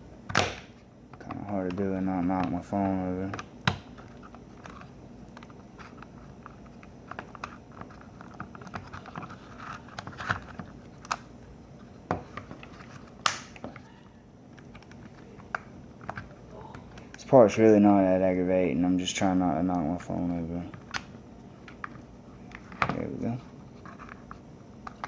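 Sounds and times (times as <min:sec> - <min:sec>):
plastic housing snapping apart: 0:00.3 - 0:00.7, 0:13.2 - 0:13.7.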